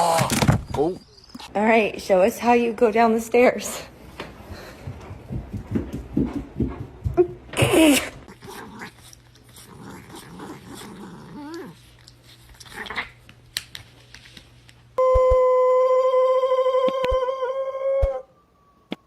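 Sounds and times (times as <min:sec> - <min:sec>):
loud steady beeping tone: 0:15.0 - 0:16.0.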